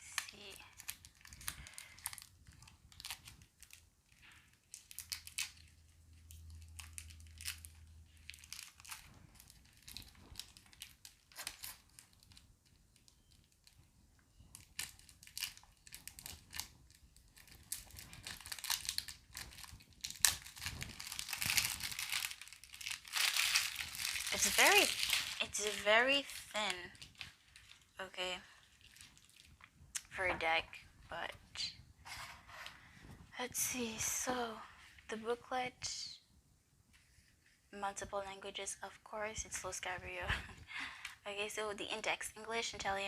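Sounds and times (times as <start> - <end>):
plastic wrap crinkling and tearing: 0.0 - 30.1.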